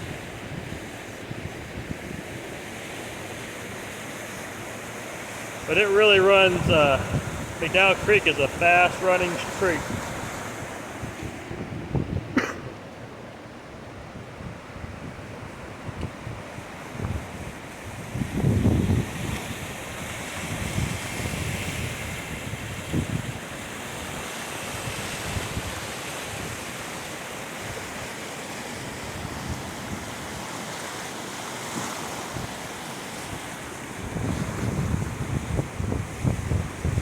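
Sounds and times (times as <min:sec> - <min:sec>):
creek water rushing: 0:00.0 - 0:37.0
wind buffeting microphone: 0:06.3 - 0:08.6, 0:09.5 - 0:12.9, 0:14.0 - 0:24.2, 0:34.0 - 0:37.0.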